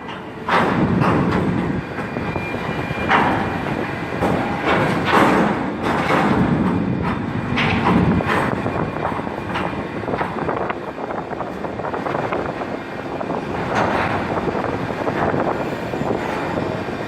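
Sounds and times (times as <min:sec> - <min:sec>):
metallic clanks and rattles: 0:00.0 - 0:02.2, 0:03.0 - 0:12.6
heavy machinery rumbling: 0:00.0 - 0:17.0.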